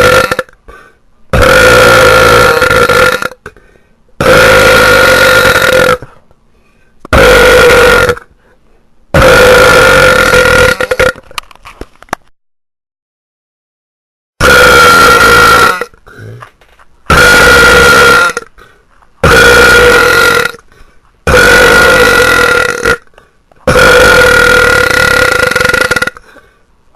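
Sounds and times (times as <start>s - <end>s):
person burping loudly: 0.0s - 0.6s, 1.3s - 3.6s, 4.2s - 6.2s, 7.1s - 8.3s, 9.1s - 11.4s, 14.4s - 16.5s, 17.1s - 18.6s, 19.2s - 20.7s, 21.3s - 26.4s.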